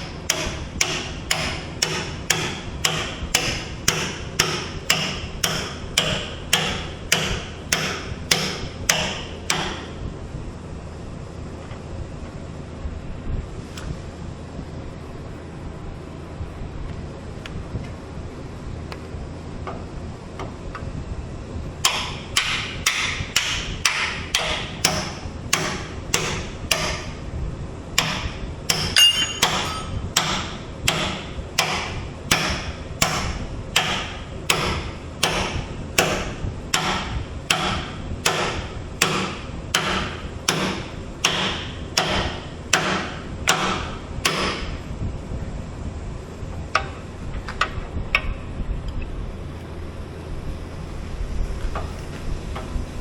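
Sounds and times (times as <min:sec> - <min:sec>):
hammer clanging on metal: 0:28.0 - 0:33.2.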